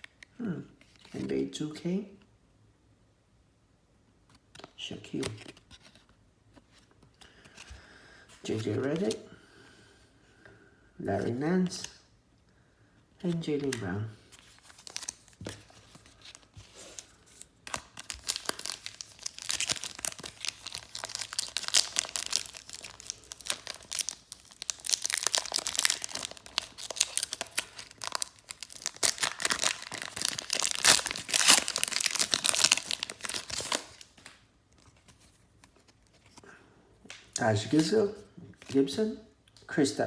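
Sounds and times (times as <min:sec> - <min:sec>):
foil wrapper crinkling: 0:16.0 - 0:34.4.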